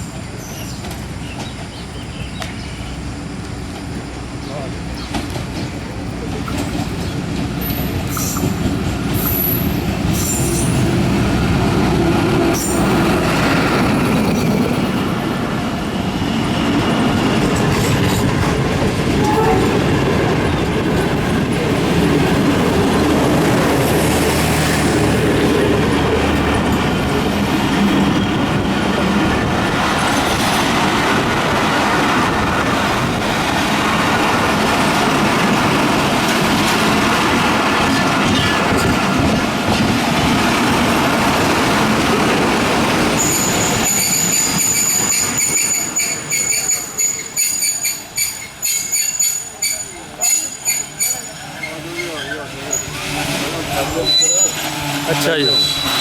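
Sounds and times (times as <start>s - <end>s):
train rumbling: 0.0s - 56.0s
high wheel squeals: 43.2s - 56.0s.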